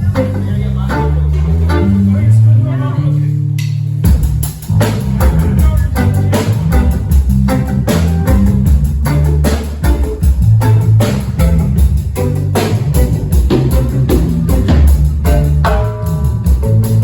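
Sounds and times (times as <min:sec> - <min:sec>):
bass guitar: 0:00.0 - 0:17.0
drum kit beat: 0:00.0 - 0:17.0
guitar: 0:00.0 - 0:17.0.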